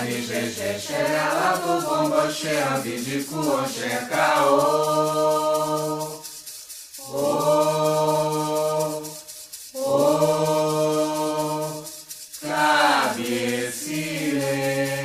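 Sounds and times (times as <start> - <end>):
person chanting held notes: 0.0 - 15.0.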